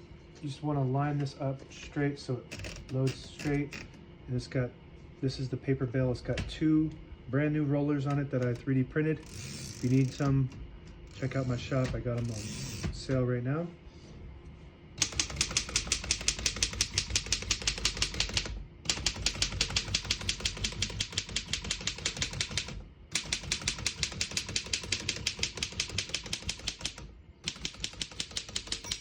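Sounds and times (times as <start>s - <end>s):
typewriter rapid typing: 15.0s - 29.0s.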